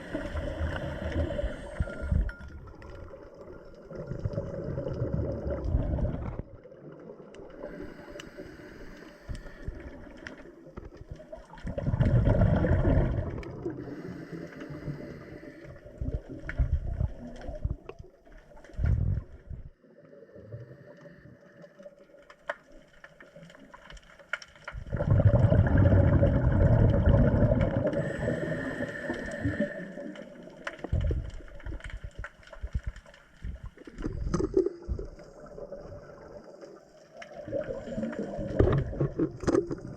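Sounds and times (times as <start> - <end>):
air bubbling underwater: 3.8 - 6.6, 11.7 - 13.9, 24.8 - 29.8.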